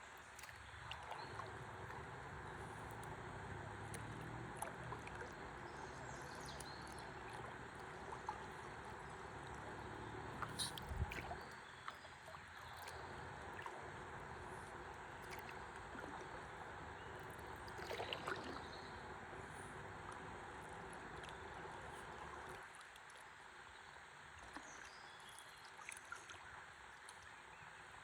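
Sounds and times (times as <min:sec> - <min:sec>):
water lapping against paddleboard: 0:00.3 - 0:18.9.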